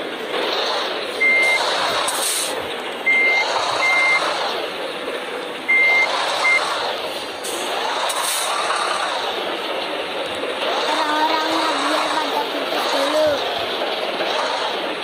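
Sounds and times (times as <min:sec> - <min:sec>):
steady vehicle noise: 0:00.0 - 0:15.0
high-pitched electronic beeps: 0:01.2 - 0:01.7, 0:03.1 - 0:04.4, 0:05.7 - 0:06.7.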